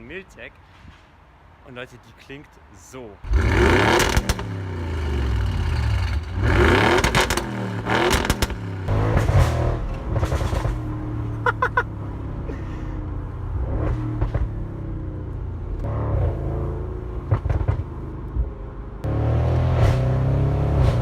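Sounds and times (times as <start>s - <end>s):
sharp exhaust cracks: 3.3s - 10.9s
car engine revving and idling: 3.3s - 21.0s.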